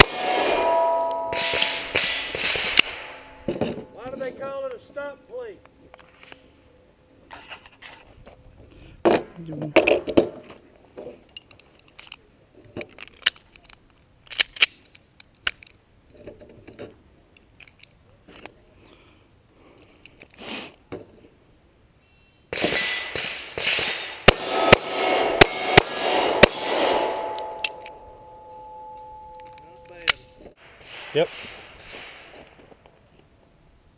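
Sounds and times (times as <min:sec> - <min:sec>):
pistol shots: 0:22.5 - 0:28.0.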